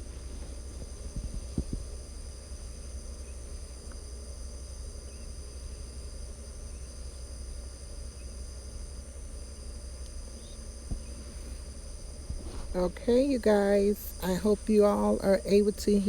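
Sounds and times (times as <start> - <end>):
crickets chirring: 0.0 - 16.0
soft low thumps: 10.9 - 11.3.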